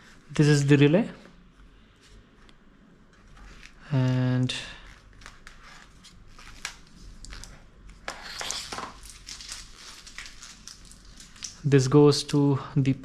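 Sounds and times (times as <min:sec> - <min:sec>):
plastic rustling: 0:03.1 - 0:11.9.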